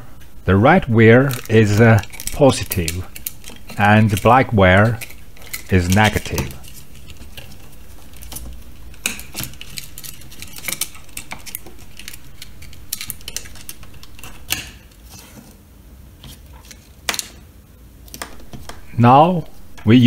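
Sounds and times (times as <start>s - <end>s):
faint low hum: 0.0s - 16.8s, 17.4s - 20.0s
small hard parts clicking and tapping: 1.2s - 15.0s, 18.1s - 19.9s.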